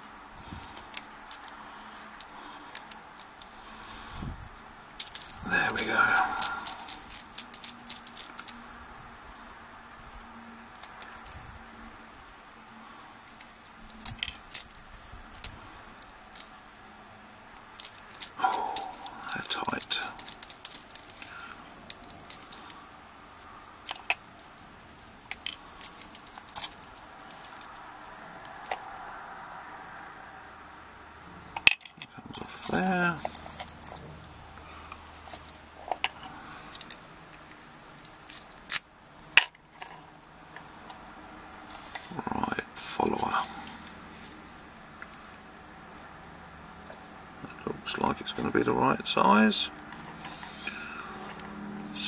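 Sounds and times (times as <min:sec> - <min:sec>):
keys and padlock clicking: 0:05.0 - 0:08.6, 0:13.3 - 0:16.5, 0:17.6 - 0:27.9, 0:31.6 - 0:40.0.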